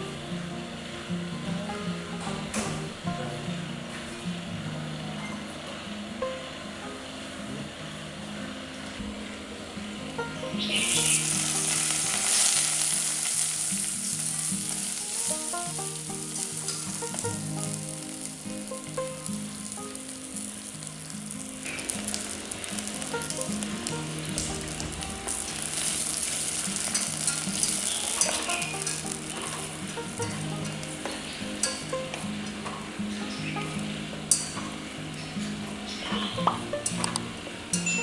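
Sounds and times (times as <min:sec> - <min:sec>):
sizzling hiss: 0:00.0 - 0:37.9
background music: 0:08.8 - 0:38.0.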